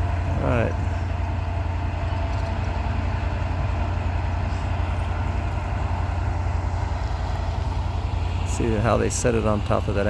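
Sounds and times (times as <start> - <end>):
diesel engine rumbling: 0.0 - 10.0.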